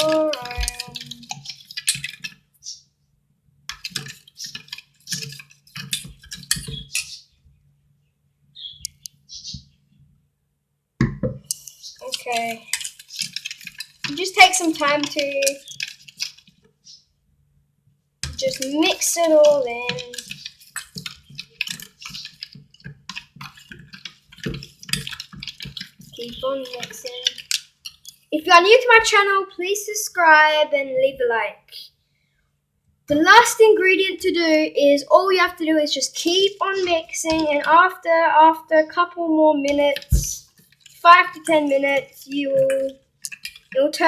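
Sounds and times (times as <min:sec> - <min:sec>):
utensil scraping slime in bowl: 0:00.0 - 0:02.6, 0:03.7 - 0:07.2, 0:11.4 - 0:17.0, 0:18.2 - 0:29.1, 0:38.9 - 0:44.0.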